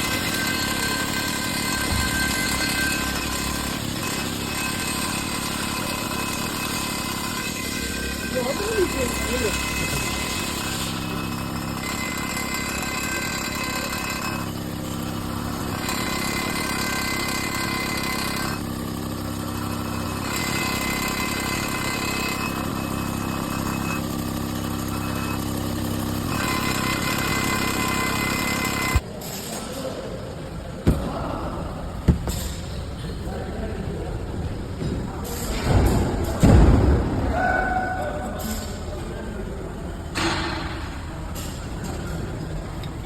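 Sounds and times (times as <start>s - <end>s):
vehicle engine running: 0.0s - 29.0s.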